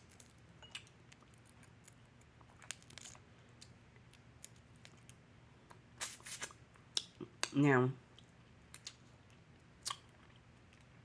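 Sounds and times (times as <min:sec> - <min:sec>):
seafood shells cracking: 0:00.1 - 0:05.2.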